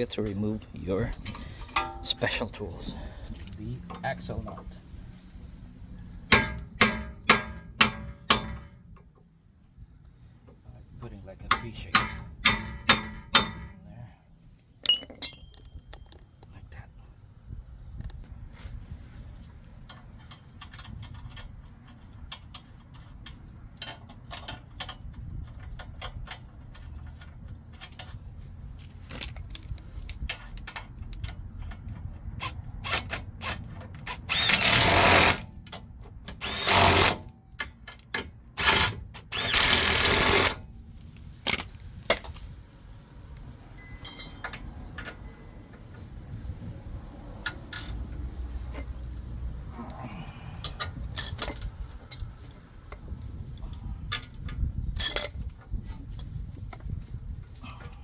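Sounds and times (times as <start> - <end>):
power tool running: 34.3 - 35.4, 36.4 - 37.2, 38.6 - 40.6
metallic clicks of tools: 47.4 - 49.0, 50.6 - 53.0, 54.1 - 56.9.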